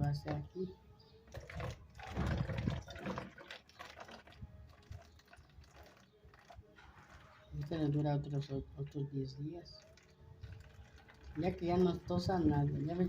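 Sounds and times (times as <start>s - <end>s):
bottle clicks and knocks: 1.3s - 6.5s
liquid pouring and splashing: 1.3s - 9.0s, 9.7s - 13.0s.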